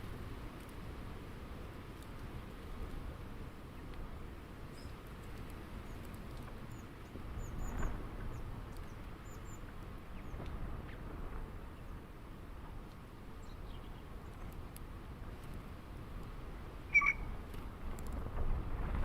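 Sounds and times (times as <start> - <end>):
steady low rumble: 5.8 - 19.0
high bird chirps: 16.9 - 17.4.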